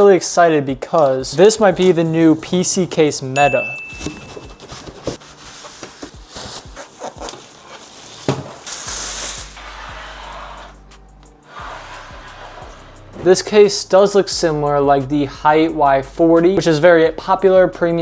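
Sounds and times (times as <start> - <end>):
cardboard and plastic rustling: 1.0 - 10.3.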